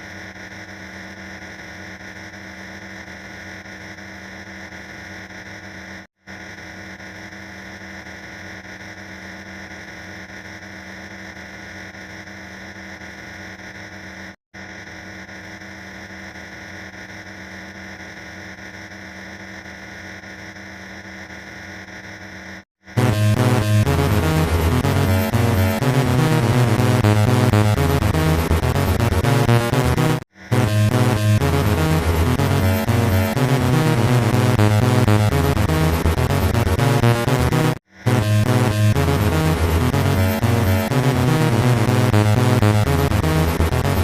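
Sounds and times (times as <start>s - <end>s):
harsh static electronic noise: 22.9s - 44.0s.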